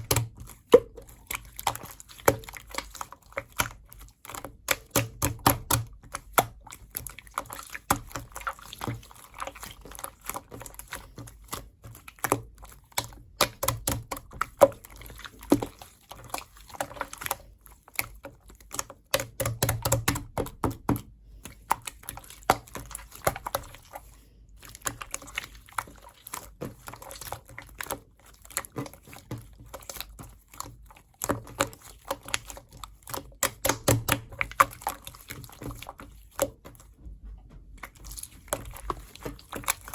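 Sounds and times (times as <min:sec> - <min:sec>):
slime squishing wet clicks and pops: 0:00.0 - 0:08.6, 0:12.1 - 0:23.9, 0:31.2 - 0:36.6.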